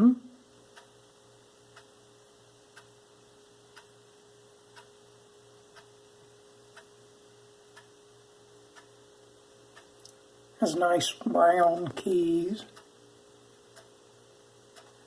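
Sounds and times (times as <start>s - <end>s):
low steady hum: 0.0s - 15.0s
faint ticking: 0.6s - 7.0s, 7.6s - 10.6s, 11.6s - 15.0s.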